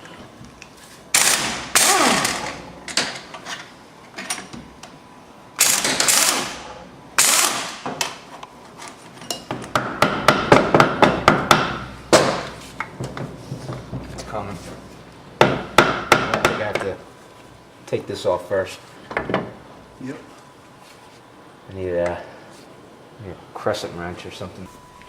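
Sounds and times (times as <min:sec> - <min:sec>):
pneumatic tool bursts: 0:01.1 - 0:02.7, 0:05.6 - 0:07.8.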